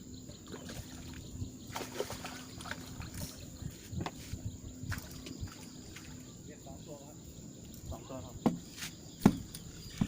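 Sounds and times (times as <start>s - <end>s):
fish splashing in water: 0.4s - 3.5s.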